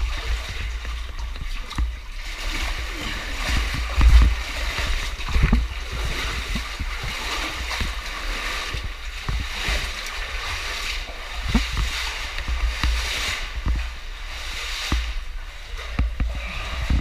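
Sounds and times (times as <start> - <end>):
water splashing and sloshing: 0.0 - 17.0
knocks and low thumps: 3.5 - 8.1, 8.7 - 9.9, 11.4 - 14.0, 15.9 - 17.0.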